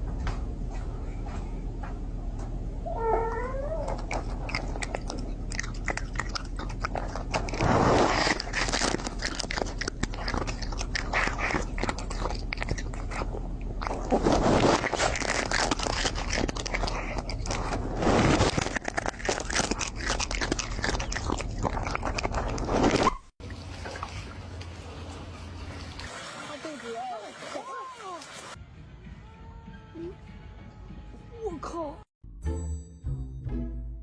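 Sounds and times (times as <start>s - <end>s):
crunchy biting and chewing: 3.8s - 23.3s.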